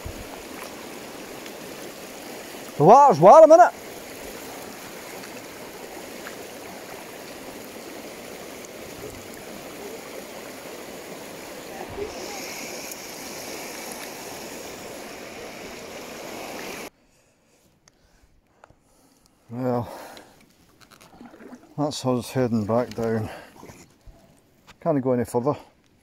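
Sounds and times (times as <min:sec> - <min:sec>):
river water running over stones: 0:00.0 - 0:16.9, 0:20.5 - 0:23.5.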